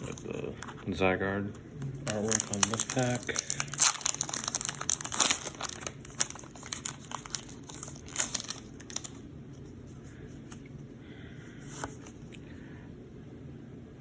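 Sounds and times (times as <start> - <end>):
wrapper crinkling: 0.0 - 1.0, 1.8 - 9.3.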